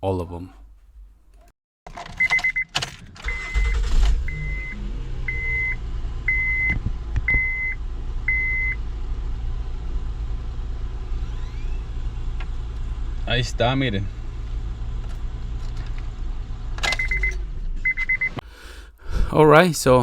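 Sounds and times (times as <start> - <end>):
car engine cranking: 1.3 - 18.4
dashboard warning chime: 2.2 - 8.8, 16.9 - 18.4
car engine idling: 3.3 - 19.0.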